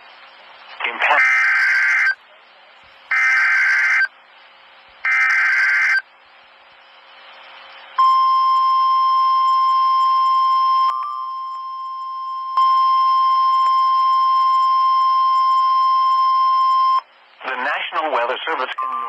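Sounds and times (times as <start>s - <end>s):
screeching digital data tones: 1.1s - 2.2s, 3.1s - 4.1s, 5.1s - 6.0s.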